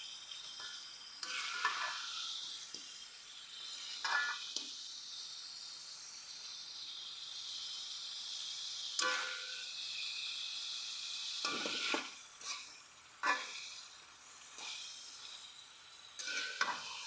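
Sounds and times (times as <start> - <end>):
bones sizzling in a pan: 0.0 - 17.0
metal utensil scraping a pan: 1.2 - 2.2, 3.9 - 4.4, 11.5 - 13.9, 16.2 - 17.0.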